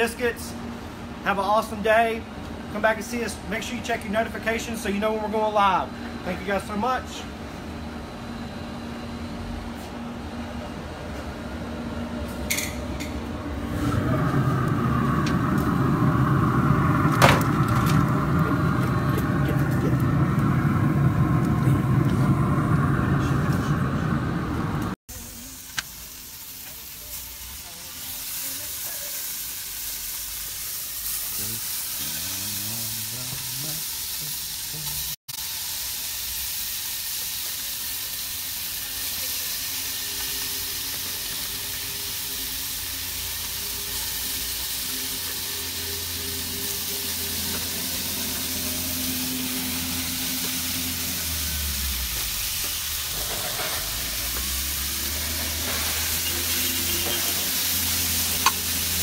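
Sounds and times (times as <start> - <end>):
bacon sizzling in a pan: 25.1 - 59.0.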